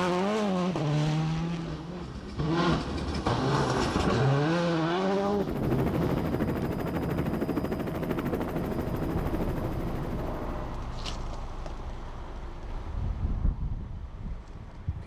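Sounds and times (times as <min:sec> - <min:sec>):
rally car engine at speed: 0:00.0 - 0:05.4.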